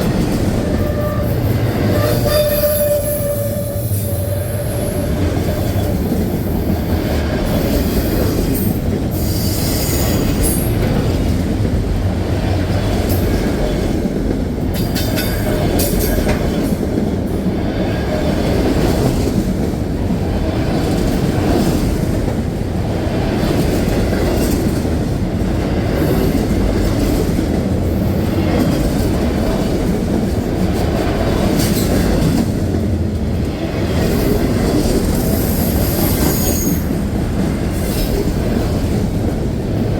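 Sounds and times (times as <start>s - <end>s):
train wheels rumbling on rails: 0.0s - 39.9s
high-pitched wheel squeals: 0.7s - 5.1s.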